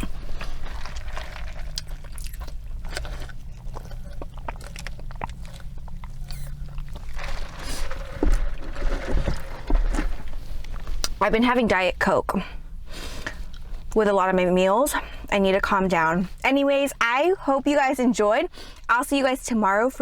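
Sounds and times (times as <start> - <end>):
sipping and swallowing: 0.0 - 11.2.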